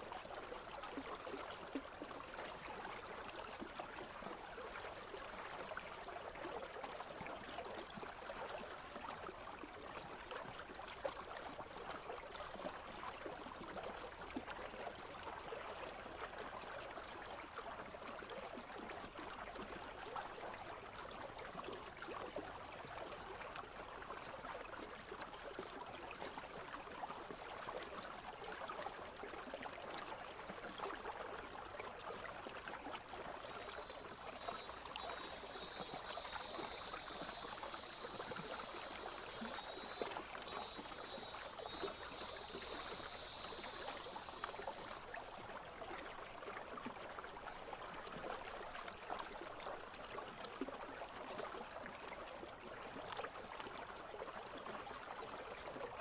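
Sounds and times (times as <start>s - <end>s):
stream babbling over stones: 30.3s - 49.9s.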